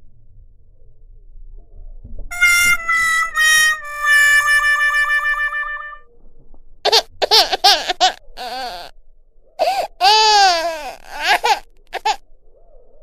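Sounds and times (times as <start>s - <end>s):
high-pitched laughter: 11.1s - 12.2s.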